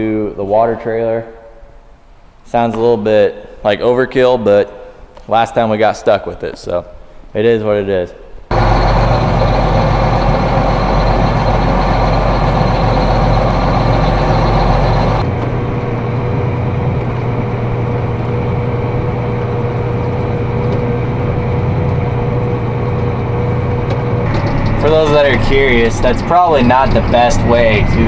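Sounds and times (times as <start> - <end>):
steady whine: 8.5 - 28.0
tractor diesel engine running: 8.5 - 28.0.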